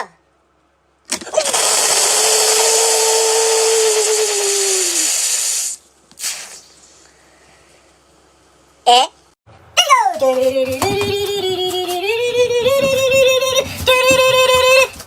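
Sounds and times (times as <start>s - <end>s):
spraying hiss: 1.8s - 7.1s.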